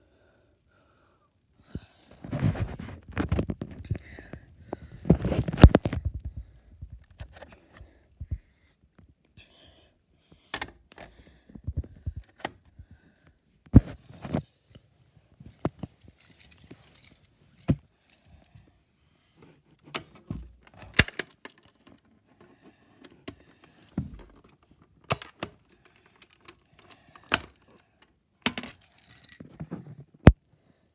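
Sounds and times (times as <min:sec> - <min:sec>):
handling clicks and knocks: 0:10.5 - 0:12.7, 0:15.4 - 0:18.4, 0:19.4 - 0:29.8
jangling rattling: 0:15.5 - 0:18.3, 0:25.8 - 0:27.6, 0:28.5 - 0:29.6.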